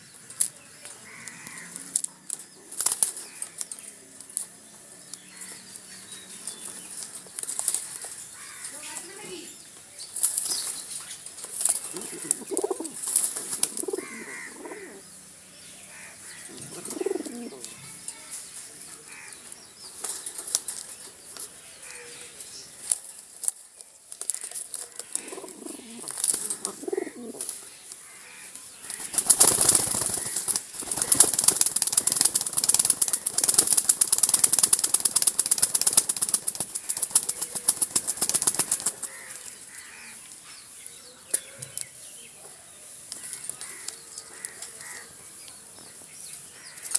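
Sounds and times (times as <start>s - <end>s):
wings flapping and rustling: 1.6s - 3.8s, 6.4s - 9.4s, 10.1s - 15.0s, 16.6s - 17.8s, 19.9s - 21.5s, 22.8s - 27.6s, 28.8s - 39.3s
pigeons cooing: 11.9s - 15.1s, 16.4s - 17.8s, 25.0s - 27.6s, 29.0s - 39.2s.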